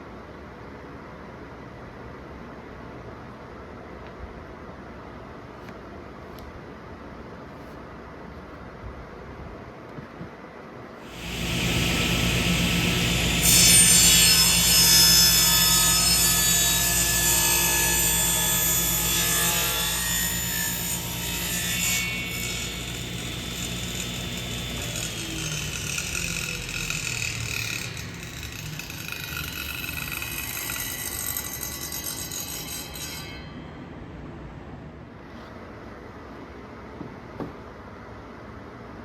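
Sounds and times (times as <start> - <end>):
power saw cutting wood: 11.0 - 33.5.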